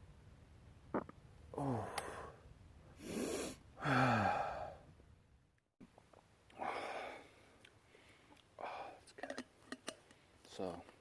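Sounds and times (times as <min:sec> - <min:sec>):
man sighing: 0:01.5 - 0:02.4, 0:03.8 - 0:04.8
man exhaling breathily: 0:01.6 - 0:02.4, 0:03.0 - 0:04.9, 0:06.6 - 0:07.4.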